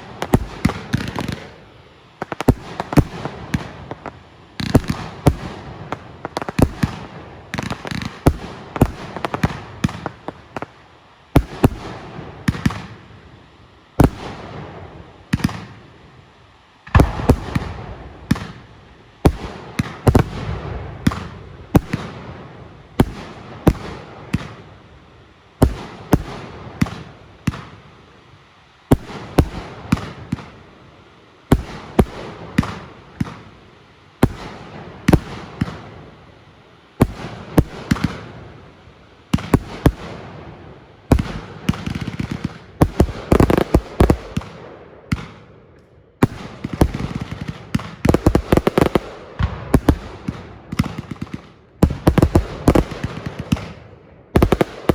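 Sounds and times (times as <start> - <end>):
crackling fireworks bangs: 0.0 - 13.2, 14.0 - 16.0, 16.8 - 25.0, 25.6 - 27.9, 28.9 - 30.7, 31.5 - 33.6, 34.2 - 36.4, 37.0 - 45.6, 46.2 - 54.9
fireworks bangs: 16.9 - 24.7, 39.4 - 45.5, 46.2 - 54.9.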